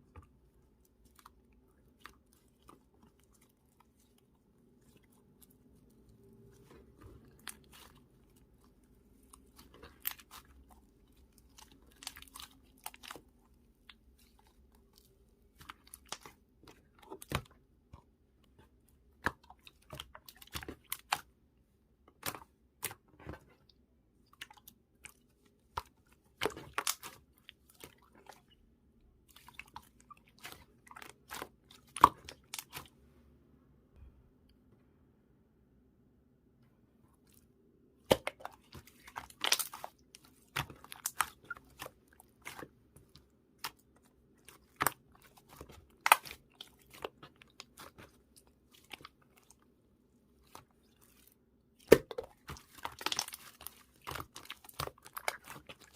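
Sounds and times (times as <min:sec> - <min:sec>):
slime squished by hand: 0:00.1 - 0:17.6, 0:24.3 - 0:28.5, 0:29.2 - 0:33.0, 0:37.2 - 0:49.7, 0:50.3 - 0:55.9.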